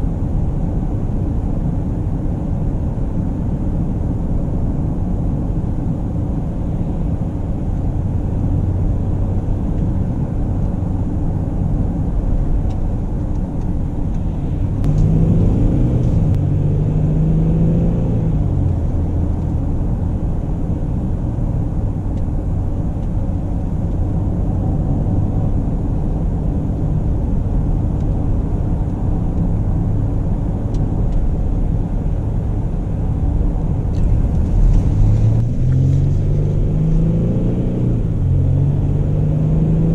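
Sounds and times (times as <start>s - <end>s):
car engine rumble: 0.0s - 39.9s
road noise: 0.0s - 39.9s.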